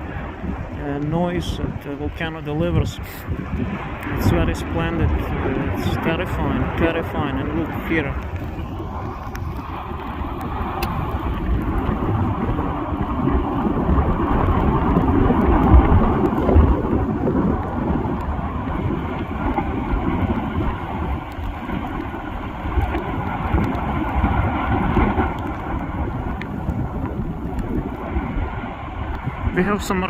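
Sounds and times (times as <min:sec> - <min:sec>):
faint crackles: 0:00.0 - 0:30.0
volcano deep rumbling: 0:00.0 - 0:30.0
wind buffeting microphone: 0:00.0 - 0:30.0.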